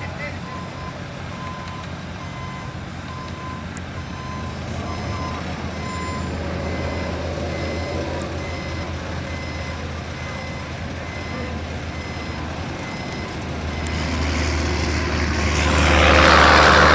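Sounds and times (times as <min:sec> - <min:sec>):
diesel truck engine running: 0:00.0 - 0:16.9
reversing alarm beeping: 0:00.4 - 0:14.2.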